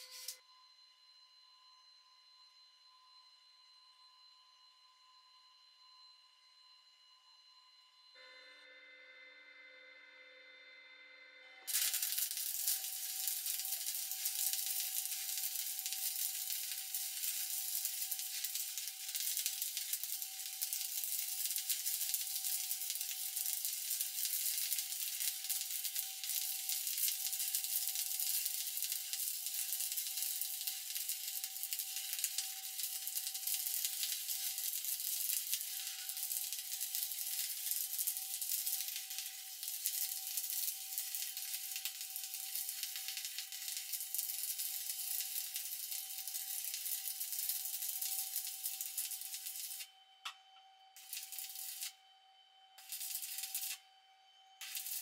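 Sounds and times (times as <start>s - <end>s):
welding arc sizzling crackle: 0.0s - 0.4s, 11.6s - 50.4s, 51.0s - 52.0s, 52.8s - 53.8s, 54.6s - 55.0s
thin steady whine: 0.0s - 55.0s.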